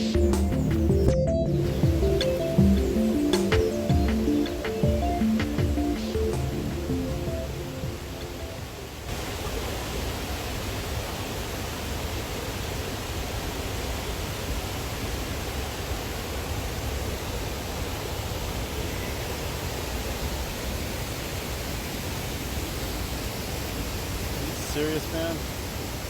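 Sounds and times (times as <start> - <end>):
background music: 0.0 - 9.0
waterfall rushing: 0.0 - 26.0.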